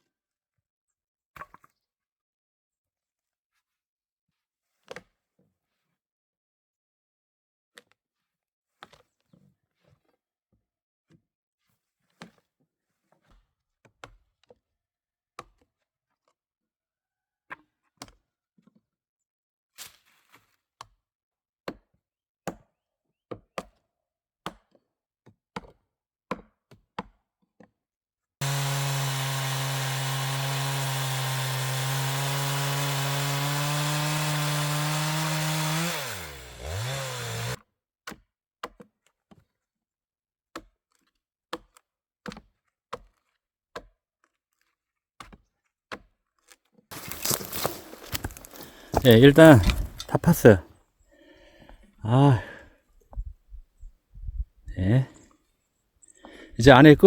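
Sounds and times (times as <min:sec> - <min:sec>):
electric chainsaw running: 0:28.4 - 0:37.6, 0:46.9 - 0:50.6.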